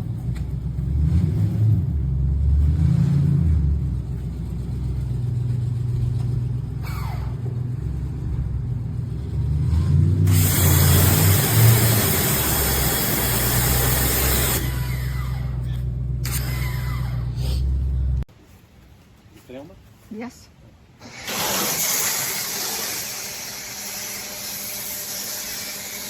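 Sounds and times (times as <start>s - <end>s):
pressure washer engine running: 10.2s - 17.3s, 21.0s - 26.0s
high-pressure water spray hiss: 10.3s - 14.7s, 21.0s - 26.0s.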